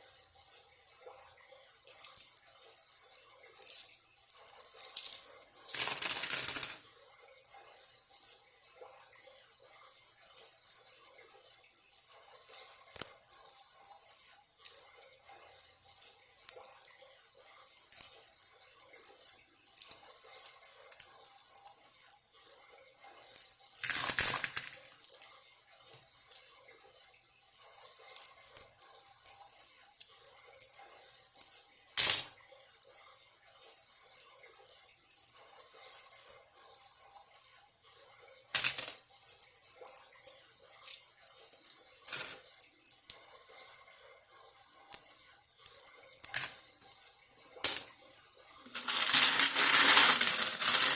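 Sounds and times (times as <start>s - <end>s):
coins rattling: 1.8s - 6.9s, 11.6s - 15.0s, 15.8s - 22.6s, 23.2s - 25.4s, 27.2s - 32.8s, 38.5s - 43.8s, 44.9s - 47.9s, 48.7s - 50.9s
coins clinking: 1.9s - 2.4s, 3.5s - 6.9s, 15.8s - 22.2s, 23.3s - 25.4s, 27.5s - 32.8s, 38.5s - 43.8s, 44.9s - 47.9s, 48.7s - 50.9s.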